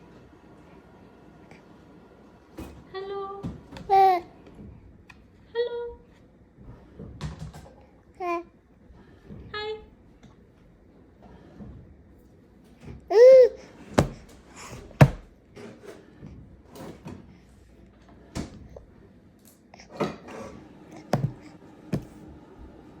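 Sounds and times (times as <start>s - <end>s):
baby squealing: 13.1s - 13.6s.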